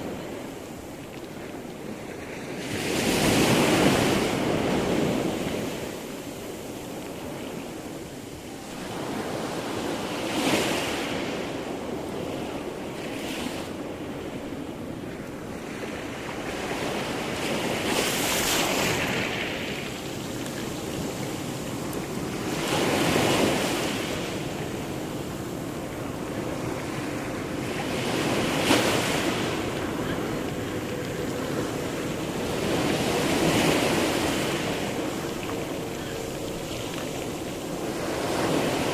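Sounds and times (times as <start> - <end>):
waves breaking: 0.0 - 38.9
steady wash of water: 15.1 - 38.9.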